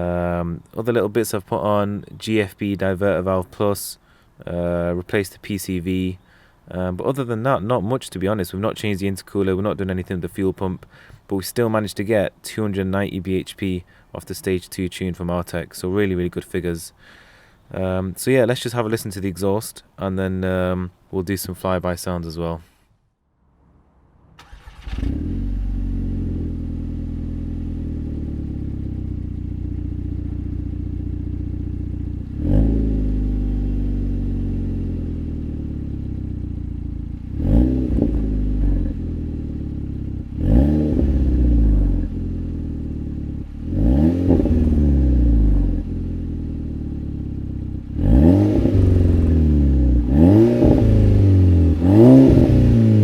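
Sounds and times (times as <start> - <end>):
car engine idling and revving: 24.4 - 53.0.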